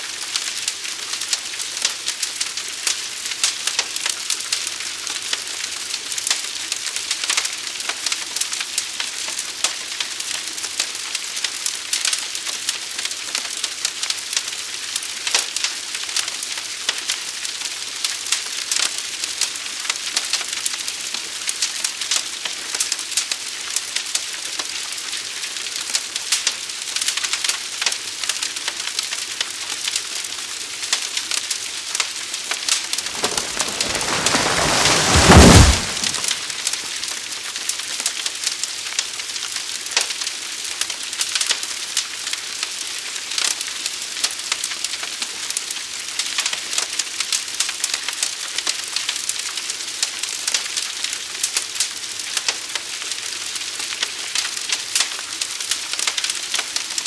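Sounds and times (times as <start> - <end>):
rushing sound: 33.0 - 36.7
fire crackling and hissing: 33.0 - 36.9.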